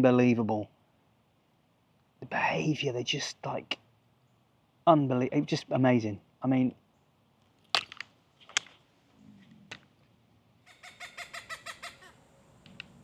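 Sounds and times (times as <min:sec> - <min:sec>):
hawk cackling call: 0:10.6 - 0:12.3.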